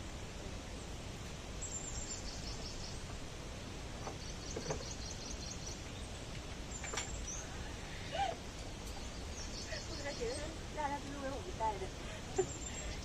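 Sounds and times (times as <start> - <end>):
steady background noise: 0.0 - 13.0
small bird chirping: 4.0 - 11.0.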